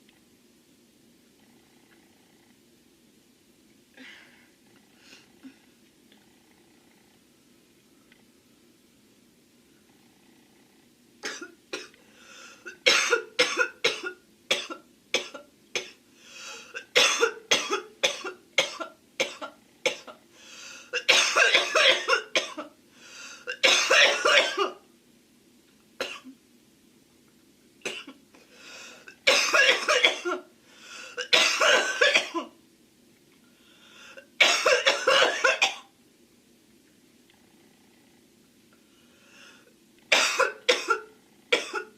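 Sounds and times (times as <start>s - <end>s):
girl coughing: 12.7s - 16.0s, 16.7s - 20.2s, 21.0s - 22.7s, 23.5s - 24.8s, 29.3s - 30.5s, 31.2s - 32.5s, 34.4s - 35.9s, 40.1s - 41.9s.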